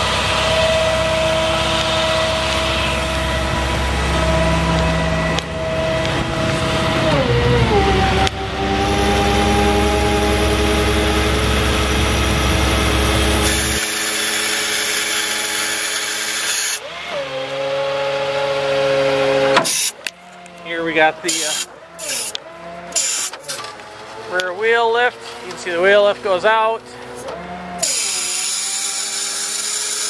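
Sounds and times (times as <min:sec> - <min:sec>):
low rumble: 0:00.0 - 0:13.8
diesel engine idling: 0:00.0 - 0:29.5
hydraulic pump whining: 0:00.0 - 0:30.0.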